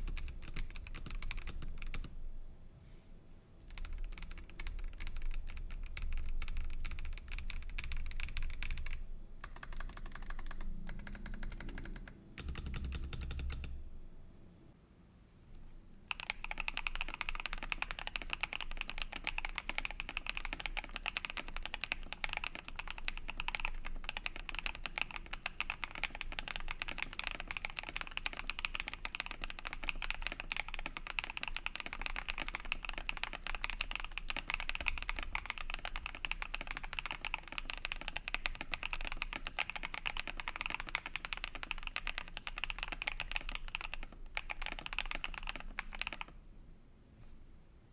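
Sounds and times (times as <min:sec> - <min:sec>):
mechanical keyboard typing: 0:00.0 - 0:02.1, 0:03.7 - 0:13.7, 0:16.1 - 0:46.4.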